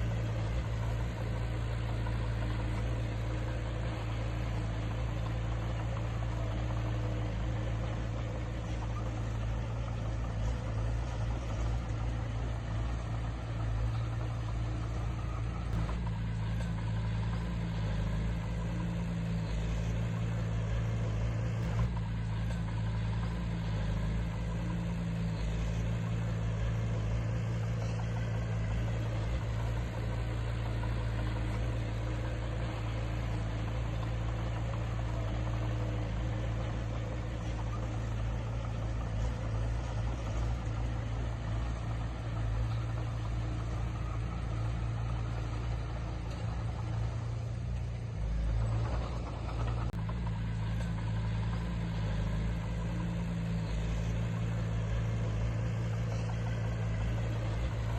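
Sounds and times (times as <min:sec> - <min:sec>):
diesel engine droning: 0:00.0 - 0:57.9.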